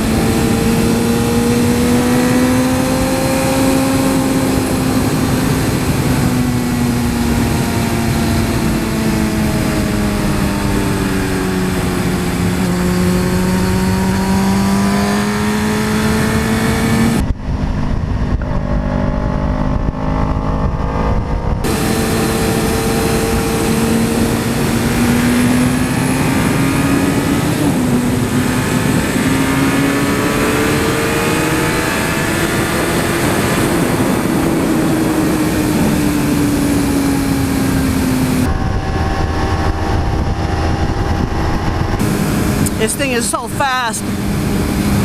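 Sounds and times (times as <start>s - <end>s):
motorcycle engine at high revs: 0.0s - 45.0s
wind rushing: 15.4s - 45.0s.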